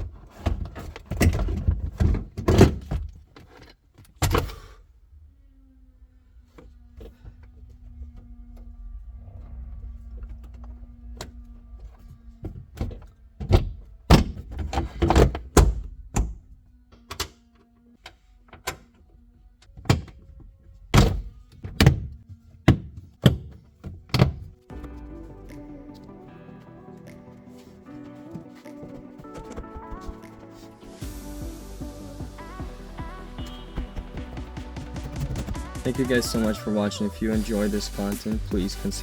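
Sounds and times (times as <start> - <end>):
music: 24.1 - 39.0.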